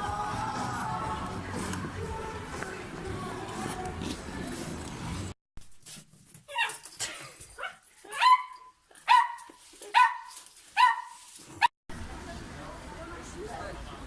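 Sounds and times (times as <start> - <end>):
dog yipping and whining: 6.5 - 11.2.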